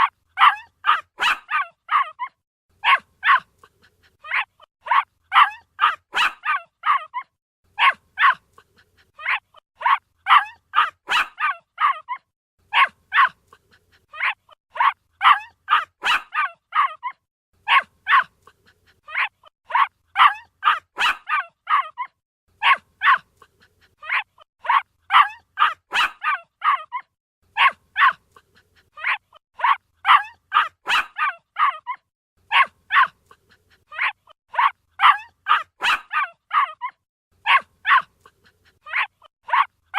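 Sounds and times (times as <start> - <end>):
puppy yapping: 0.0 - 39.7.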